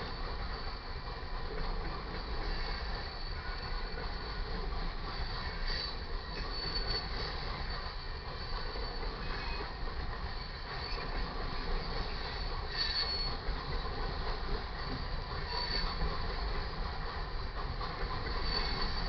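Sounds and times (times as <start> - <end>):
wheel flanges squealing: 5.1 - 13.9, 15.4 - 16.2, 18.2 - 19.0.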